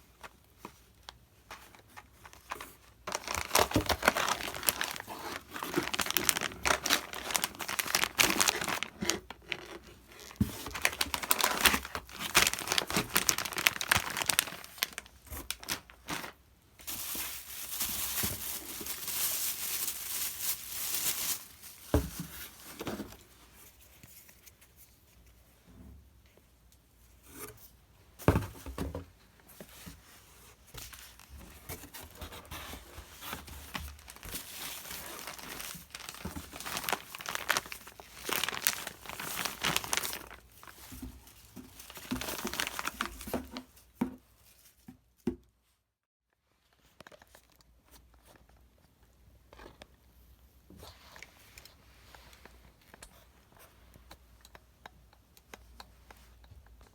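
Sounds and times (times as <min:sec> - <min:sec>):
packaging crinkling and tearing: 0:01.0 - 0:23.2, 0:30.8 - 0:43.8.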